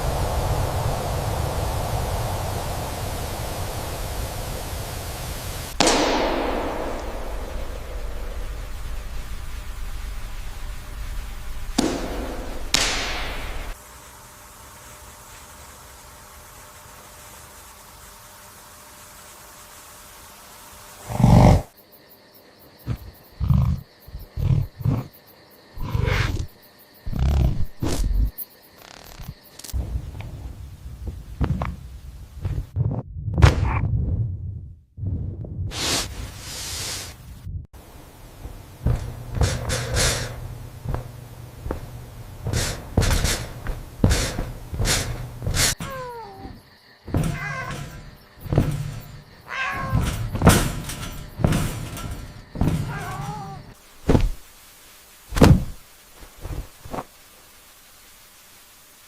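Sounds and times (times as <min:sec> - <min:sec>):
steady low hum: 0:00.0 - 0:25.2, 0:37.2 - 0:46.0, 0:47.0 - 0:54.5
steady hiss: 0:00.0 - 0:32.7, 0:35.8 - 0:59.0
animal growls: 0:21.0 - 0:21.7, 0:22.8 - 0:25.2, 0:25.8 - 0:28.3
soft thumps and rustling: 0:38.4 - 0:46.1, 0:47.1 - 0:54.5, 0:55.3 - 0:57.1.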